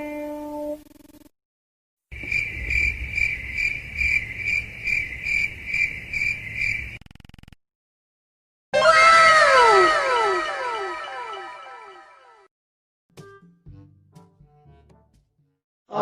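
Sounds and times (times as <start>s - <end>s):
crickets chirping: 2.1s - 7.0s.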